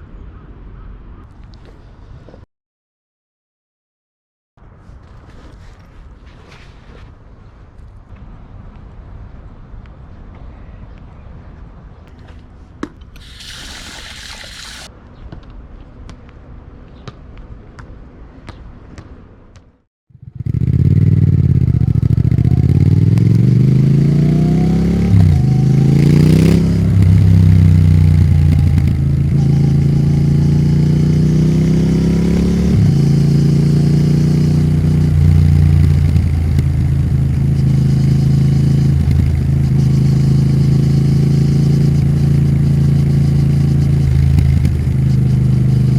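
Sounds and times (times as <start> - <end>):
short hiss: 13.1 - 14.9
motorcycle exhaust revving: 20.2 - 45.9.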